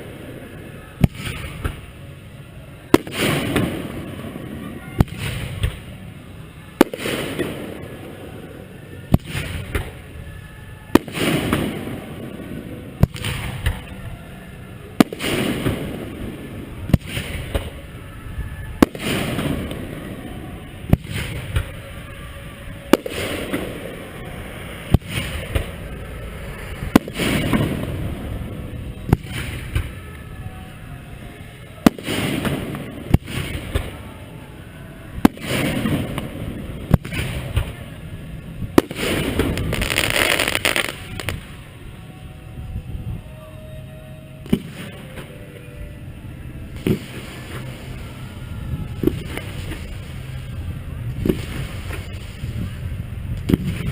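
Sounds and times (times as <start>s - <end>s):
fireworks shells bursting: 38.8s - 41.5s.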